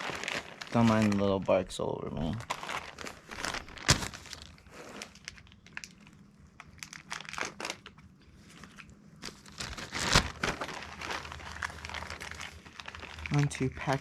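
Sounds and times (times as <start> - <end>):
plastic snack packet crinkling: 0.0 - 14.0
sharp crackle: 2.2 - 8.0.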